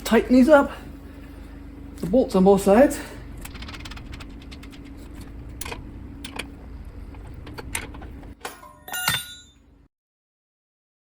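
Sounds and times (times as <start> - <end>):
steady low hum: 0.0 - 9.9
metal on metal clink: 8.4 - 9.6.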